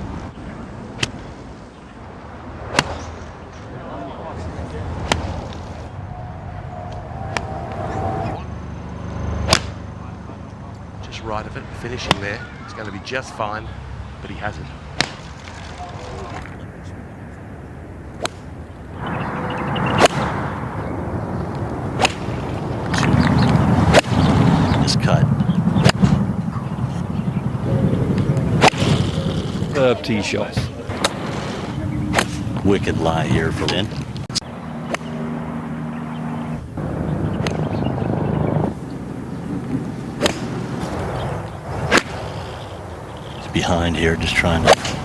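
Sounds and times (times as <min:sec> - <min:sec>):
golf club striking ball: 0:40.2 - 0:40.6.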